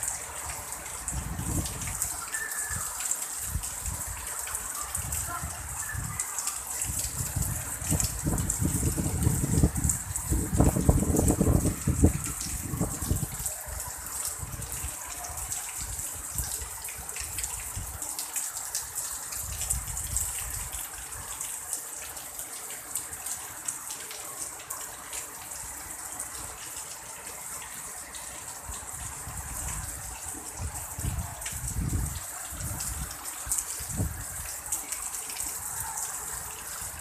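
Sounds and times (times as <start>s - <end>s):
heavy rain pouring: 0.0s - 37.0s
wind gusting over microphone: 1.0s - 2.1s, 6.8s - 13.5s, 28.9s - 34.5s.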